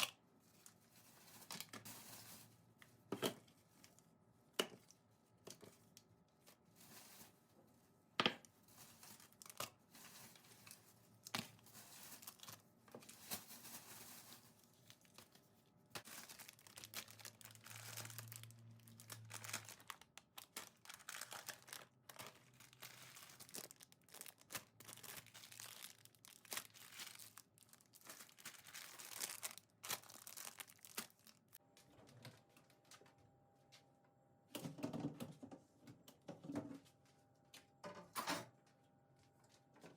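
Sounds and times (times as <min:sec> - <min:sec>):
material crinkling and rustling: 0:04.8 - 0:31.7.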